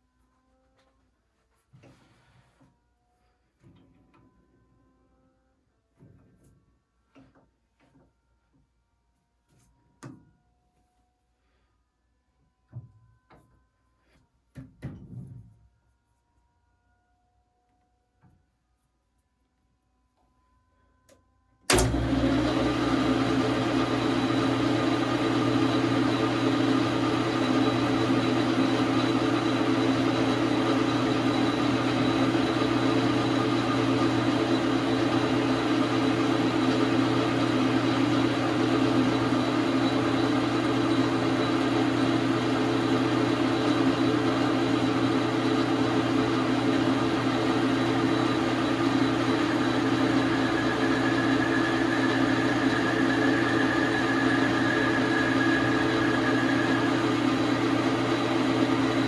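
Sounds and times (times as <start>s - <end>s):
lathe humming: 21.7s - 59.0s.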